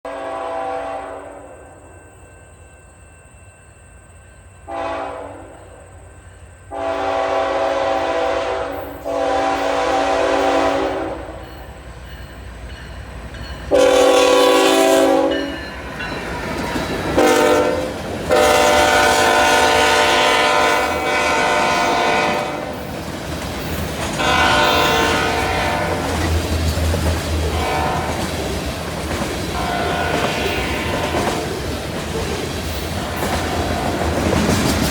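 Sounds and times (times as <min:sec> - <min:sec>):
locomotive air horn blasts: 0:00.0 - 0:01.5, 0:04.7 - 0:05.6, 0:06.7 - 0:11.4, 0:13.7 - 0:15.6, 0:17.2 - 0:22.8, 0:24.2 - 0:26.2, 0:27.5 - 0:28.3, 0:29.6 - 0:31.4
train rumble and wheel clatter: 0:00.1 - 0:34.9.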